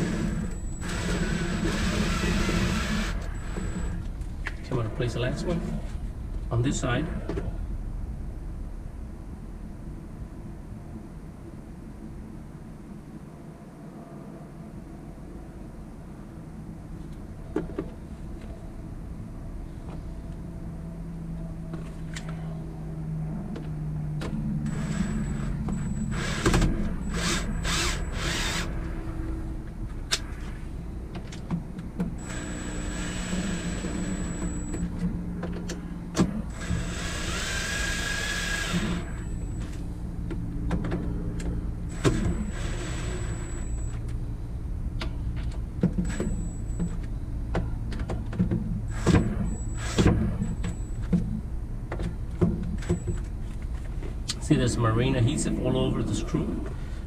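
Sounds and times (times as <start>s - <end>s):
power drill driving screws: 0.0s - 4.0s, 24.6s - 28.7s, 32.2s - 34.8s, 36.5s - 39.4s, 41.9s - 43.8s, 48.9s - 50.8s.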